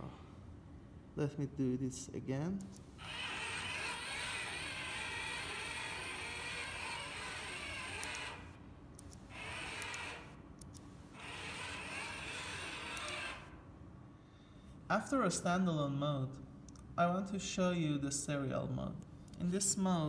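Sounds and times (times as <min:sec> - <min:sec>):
robot motors and gears whirring: 0:03.0 - 0:13.6.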